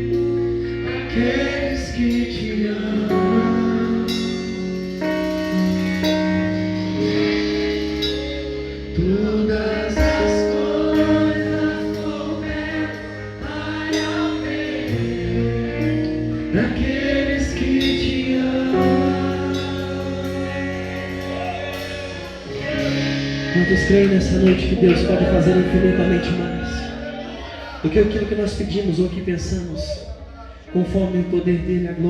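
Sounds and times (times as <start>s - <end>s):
gospel band playing: 0.0s - 32.0s
voices singing: 0.7s - 4.6s, 8.2s - 28.3s.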